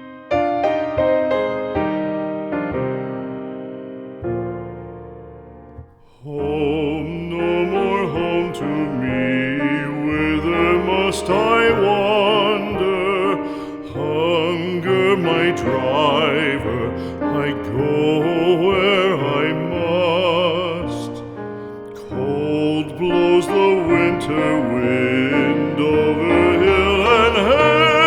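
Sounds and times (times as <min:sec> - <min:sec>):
piano chords: 0:00.0 - 0:28.0
classical vocal with vibrato: 0:06.0 - 0:28.0.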